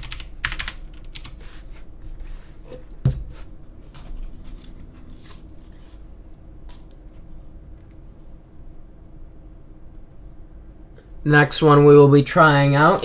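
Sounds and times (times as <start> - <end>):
dull thump on table: 3.0 - 3.4.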